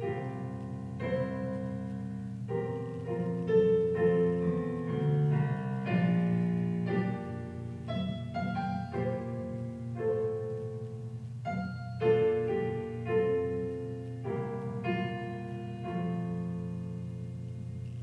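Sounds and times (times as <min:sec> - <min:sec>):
piano playing slow chords: 0:00.0 - 0:18.0.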